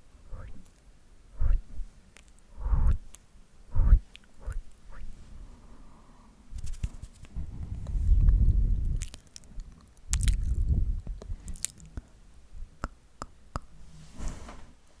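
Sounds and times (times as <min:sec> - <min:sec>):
low muffled rumbles: 0:01.3 - 0:05.5, 0:06.5 - 0:12.8
wet mouth clicks and smacks: 0:02.1 - 0:03.2, 0:03.8 - 0:04.8, 0:08.8 - 0:12.1.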